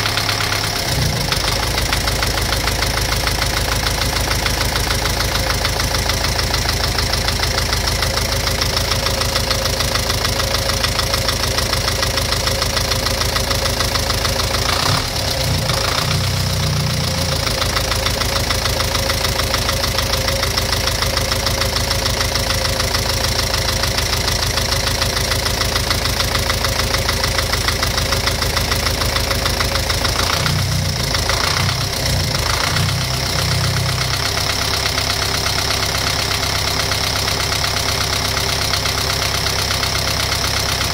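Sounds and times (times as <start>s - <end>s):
car engine idling with rapid knock: 0.0s - 40.9s.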